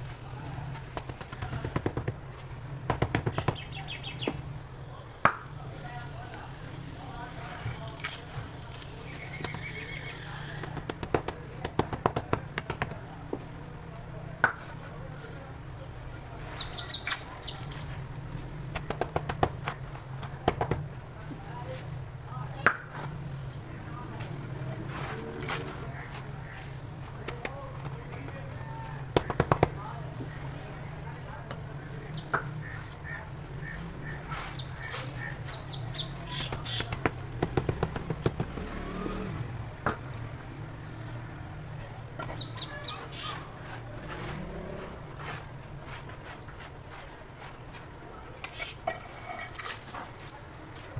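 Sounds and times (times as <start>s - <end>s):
blocks tapped and crumbling: 0.7s - 3.7s, 10.6s - 13.5s, 18.7s - 21.4s, 27.1s - 30.3s, 35.9s - 38.7s.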